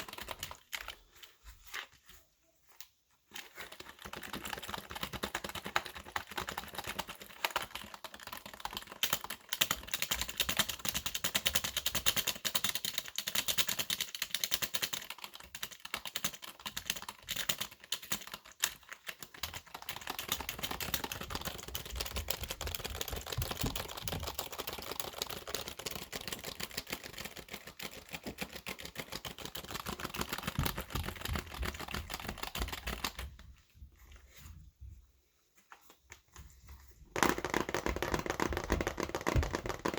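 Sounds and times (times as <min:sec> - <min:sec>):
keyboard typing fast: 0:00.0 - 0:00.9, 0:03.6 - 0:33.4.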